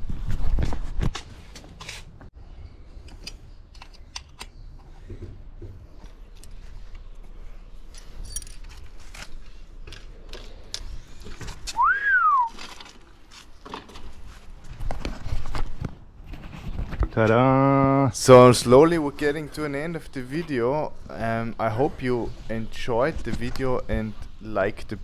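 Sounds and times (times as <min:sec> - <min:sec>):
sliding whistle: 0:11.7 - 0:12.7.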